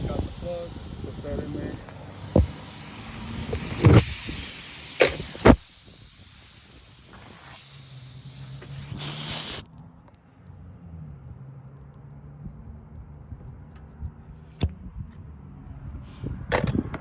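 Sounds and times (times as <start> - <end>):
compressed air hissing from tire: 0.0 - 9.7
sharp knocks: 2.3 - 2.6.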